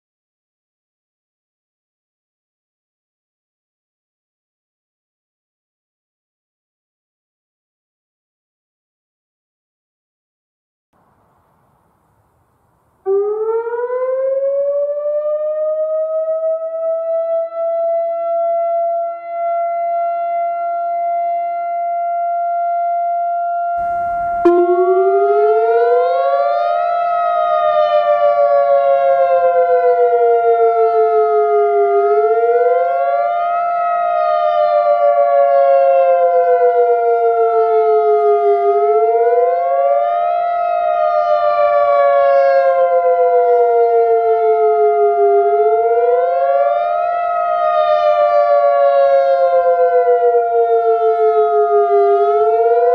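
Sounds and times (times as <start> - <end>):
siren steady tone: 13.0 - 52.9
wailing siren tone: 13.0 - 52.9.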